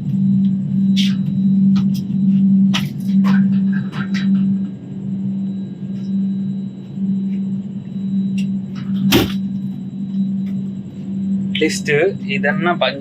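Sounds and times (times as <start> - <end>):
train coach hum and rumble: 0.0 - 13.0
sharp knock: 9.1 - 9.4.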